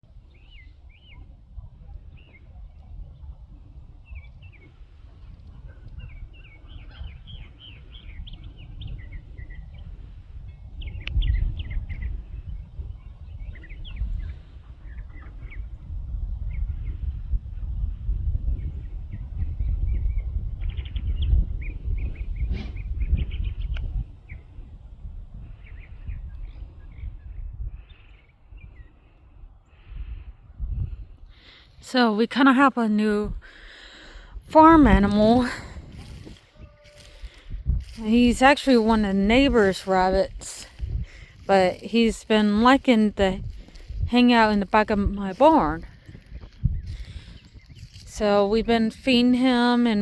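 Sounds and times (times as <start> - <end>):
songbirds chirping and singing: 0.2 - 15.8, 46.7 - 49.8.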